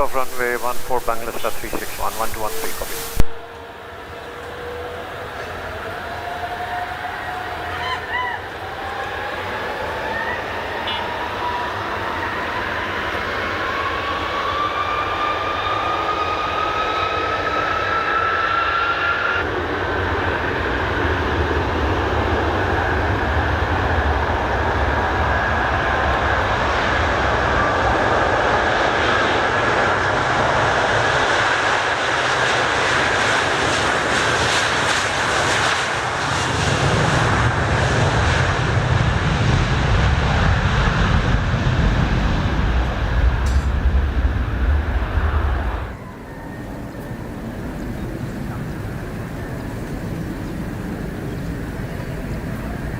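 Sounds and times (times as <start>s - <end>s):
jet engines spooling up: 0.0s - 7.3s, 8.6s - 51.7s.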